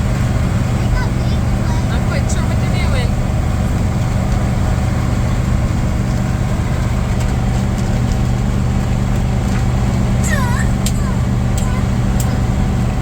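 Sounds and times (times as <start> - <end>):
engine and road drone in vehicle: 0.0 - 13.0.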